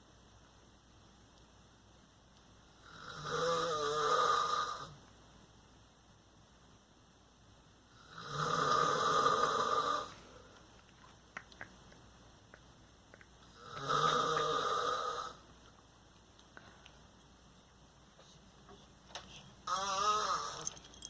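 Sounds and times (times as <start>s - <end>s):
man snoring: 2.8s - 5.0s, 8.0s - 10.2s, 13.5s - 15.4s, 19.7s - 20.7s
quiet breathing: 9.1s - 10.9s, 16.4s - 17.3s, 18.1s - 21.0s.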